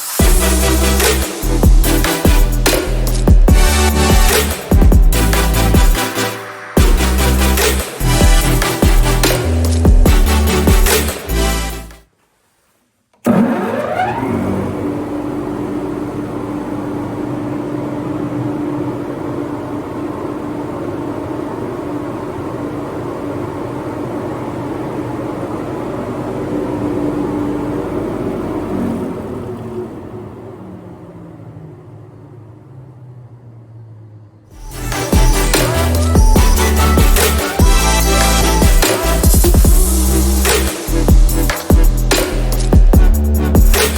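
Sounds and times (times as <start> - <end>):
dust extractor whirring: 13.2 - 30.6.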